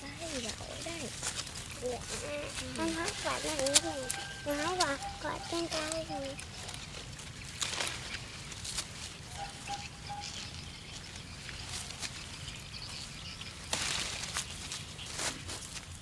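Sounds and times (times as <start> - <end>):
leaves and branches rustling: 0.0 - 16.0
branches snapping: 0.8 - 9.4, 13.4 - 15.9
faint bird call: 1.8 - 6.8, 9.2 - 13.4.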